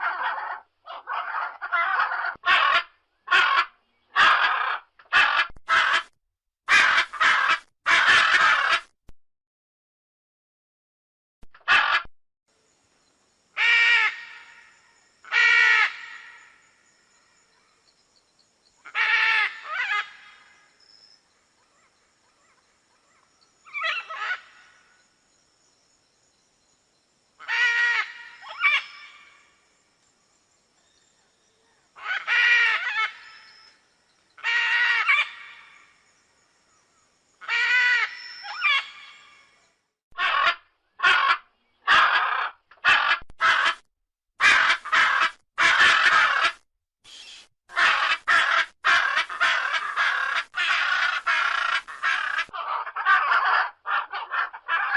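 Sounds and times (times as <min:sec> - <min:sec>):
macaw squawking: 0:00.0 - 0:06.1, 0:06.7 - 0:08.9, 0:23.7 - 0:24.6, 0:27.4 - 0:29.3, 0:34.4 - 0:35.8, 0:37.4 - 0:39.3, 0:40.2 - 0:43.8, 0:44.4 - 0:54.9.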